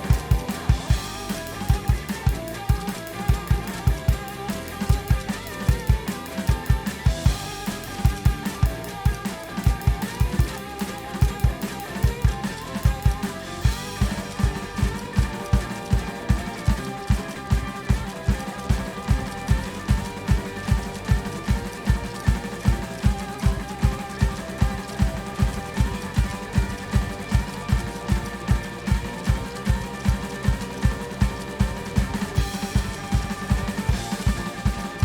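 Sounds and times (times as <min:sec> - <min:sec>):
drum kit playing fast: 0:00.0 - 0:35.0
lead guitar line: 0:00.0 - 0:35.0
rock music: 0:00.0 - 0:35.0.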